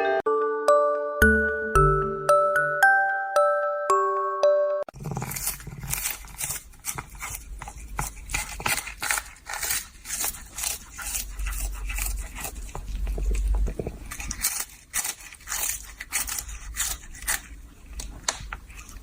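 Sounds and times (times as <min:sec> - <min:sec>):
rapid scratching and clicking: 0:04.9 - 0:19.0.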